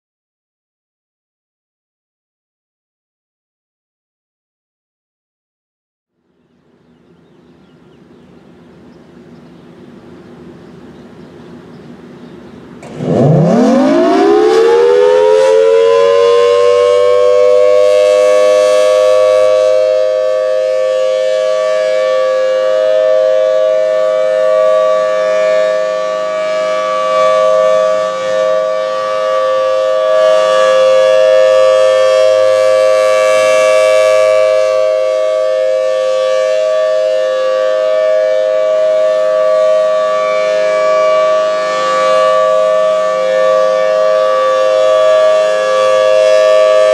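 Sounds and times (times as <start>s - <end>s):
outdoor warning siren winding up: 12.6s - 46.9s.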